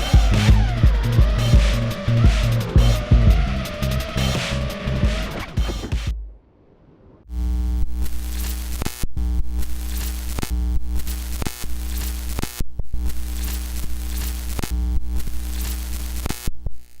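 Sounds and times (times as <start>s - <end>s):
electronic hip-hop beat: 0.0s - 6.3s.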